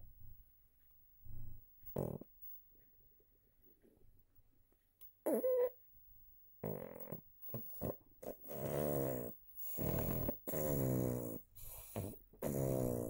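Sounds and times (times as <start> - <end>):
person snoring: 1.9 - 2.3, 6.6 - 13.0.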